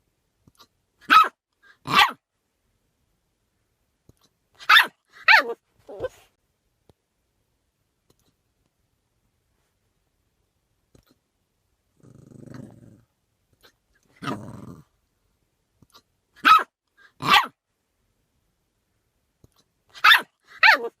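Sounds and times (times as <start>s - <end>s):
puppy barking: 1.0s - 2.2s, 4.6s - 6.2s, 16.4s - 17.6s, 19.9s - 21.0s
puppy growling: 11.9s - 13.1s, 14.1s - 14.9s.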